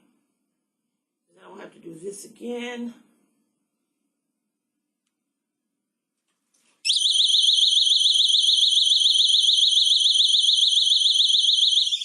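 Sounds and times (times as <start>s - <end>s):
electronic alarm siren warbling: 6.9s - 12.0s.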